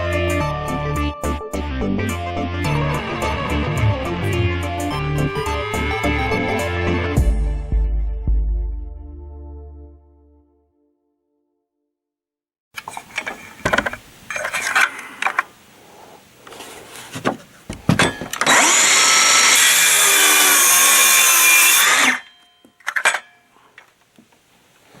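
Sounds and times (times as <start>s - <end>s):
knocks and clattering from handling: 12.8s - 15.4s, 17.1s - 18.5s
power tool running: 18.4s - 22.3s.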